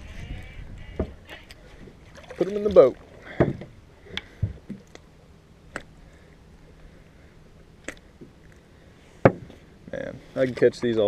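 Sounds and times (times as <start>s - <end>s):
clicks and knocks handling fish: 3.4s - 5.1s.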